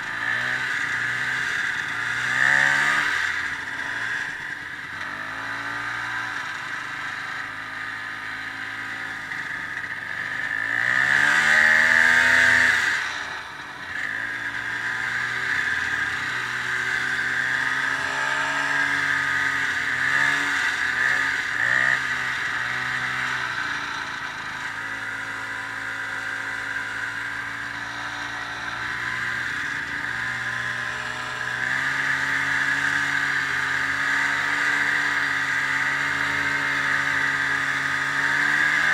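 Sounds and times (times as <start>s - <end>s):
snowmobile engine revving: 0.0s - 38.9s.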